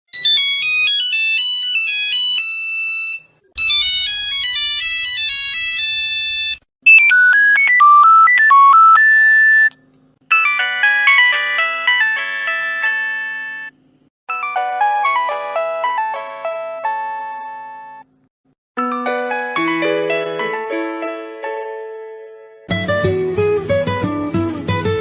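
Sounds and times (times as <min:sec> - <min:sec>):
phone ringtone melodies: 0:00.2 - 0:09.7, 0:10.3 - 0:18.1, 0:18.8 - 0:21.1.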